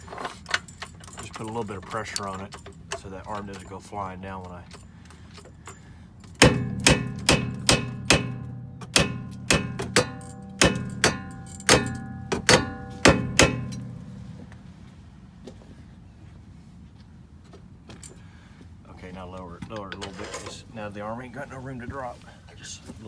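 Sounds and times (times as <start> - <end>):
hammer striking steel: 6.4 - 14.8.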